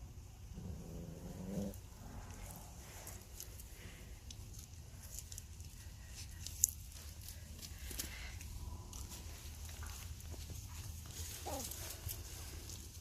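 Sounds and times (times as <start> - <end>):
dog growling: 0.5 - 2.6
dogs' paws pattering: 2.1 - 13.0.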